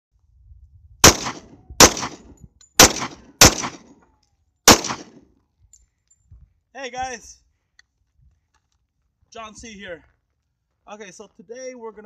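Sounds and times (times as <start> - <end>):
pistol shots with echo: 1.0 - 3.9, 4.7 - 5.2.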